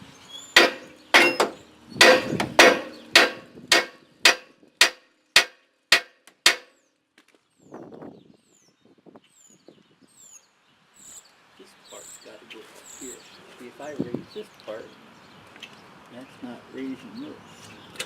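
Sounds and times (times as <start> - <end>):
hammer blows on steel: 0.6 - 6.7.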